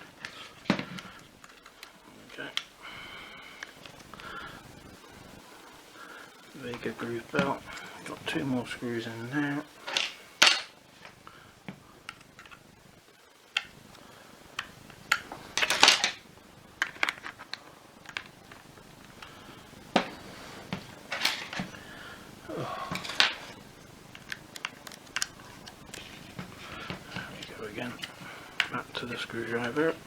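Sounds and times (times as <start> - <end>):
plastic parts and tools clicking: 0.1 - 2.8, 9.8 - 10.8, 11.6 - 12.7, 14.6 - 16.2, 16.8 - 19.3, 22.9 - 29.9.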